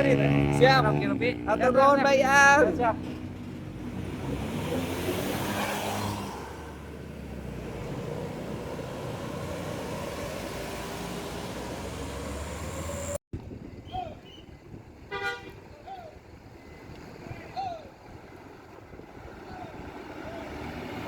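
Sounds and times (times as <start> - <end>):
bus engine: 0.0 - 13.2, 15.8 - 21.0
road noise: 0.0 - 21.0.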